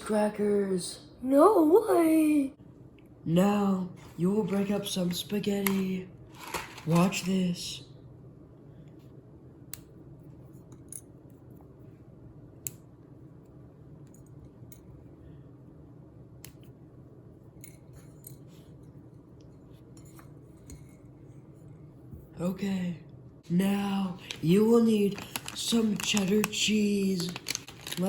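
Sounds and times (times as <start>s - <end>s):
faint low hum: 0.0s - 28.0s
dry spaghetti snapping: 24.2s - 28.0s.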